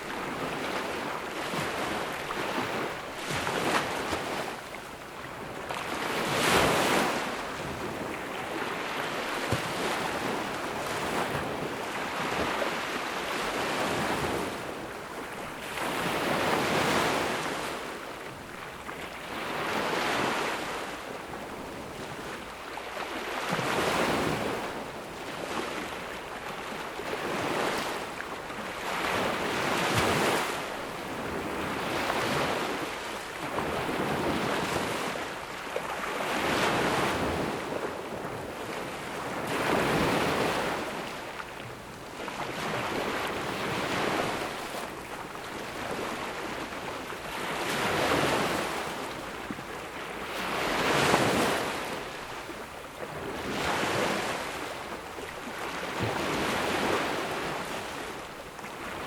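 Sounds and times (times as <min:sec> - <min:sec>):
waves breaking on sandy beach: 0:00.0 - 0:59.0.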